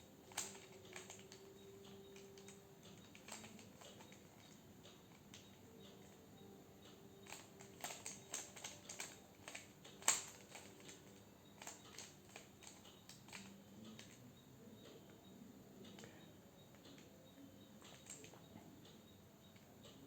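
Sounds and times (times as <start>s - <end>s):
puzzle cube clicking: 0.3s - 1.5s, 7.3s - 14.2s.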